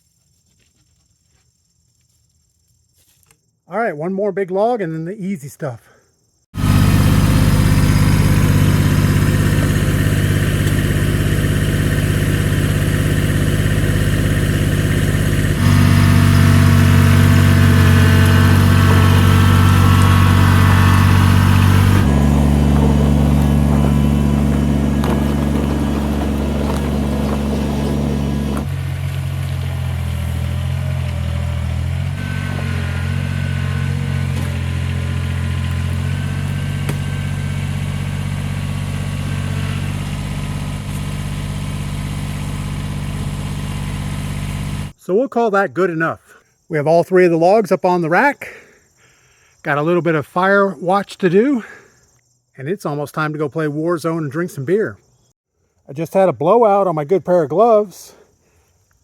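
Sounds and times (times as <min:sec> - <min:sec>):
machine engine running: 0:06.6 - 0:44.9.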